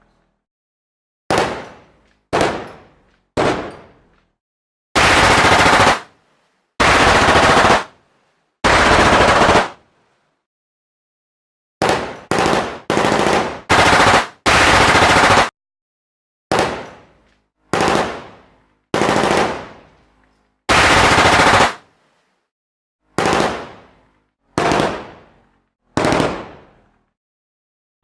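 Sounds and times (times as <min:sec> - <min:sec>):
machine gun bursts: 0:05.0 - 0:06.1, 0:06.8 - 0:07.9, 0:08.7 - 0:09.8, 0:11.9 - 0:15.5, 0:20.7 - 0:21.8, 0:26.0 - 0:26.5.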